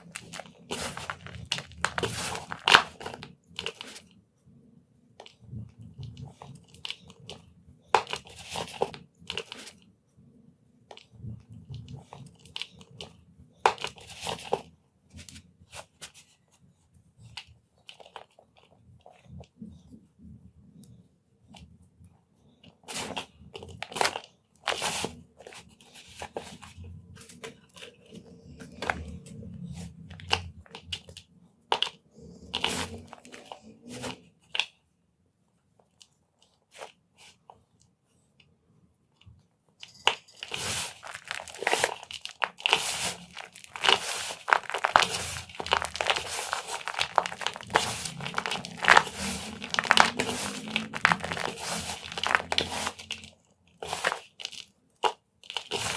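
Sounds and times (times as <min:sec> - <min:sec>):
chalk blocks crunching: 0:00.0 - 0:04.1, 0:22.8 - 0:34.7, 0:39.9 - 0:55.9.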